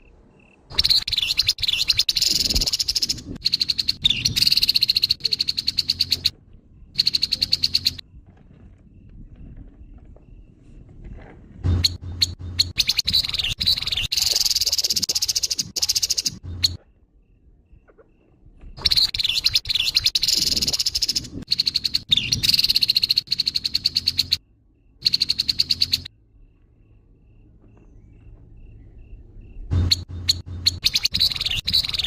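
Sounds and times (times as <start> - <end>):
bird rattling chatter: 11.8 - 16.8, 29.8 - 32.0.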